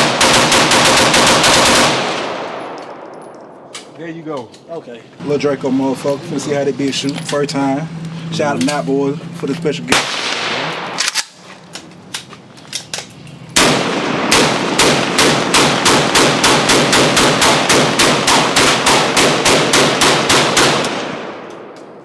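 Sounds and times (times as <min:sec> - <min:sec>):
pistol rapid fire: 0:00.0 - 0:02.6, 0:09.9 - 0:11.3, 0:13.6 - 0:21.8.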